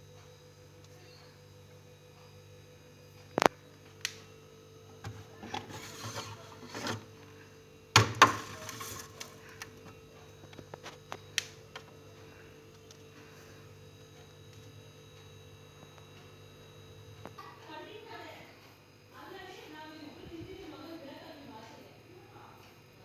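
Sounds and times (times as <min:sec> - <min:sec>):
faint hum: 0:00.0 - 0:23.0
hard objects knocking: 0:08.0 - 0:09.4.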